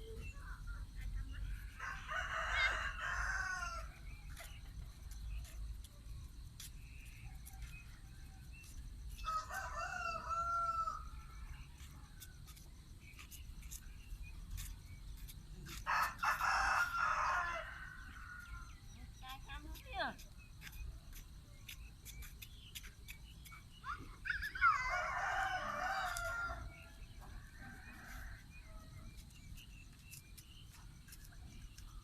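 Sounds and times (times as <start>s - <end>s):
rooster crowing: 1.8s - 4.0s, 9.2s - 11.2s, 15.8s - 18.7s, 23.8s - 28.5s.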